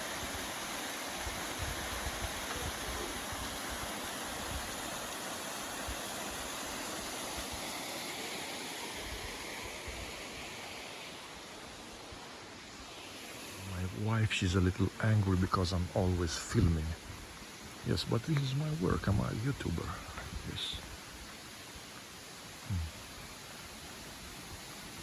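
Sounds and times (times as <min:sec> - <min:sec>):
waterfall rushing: 0:00.0 - 0:25.0.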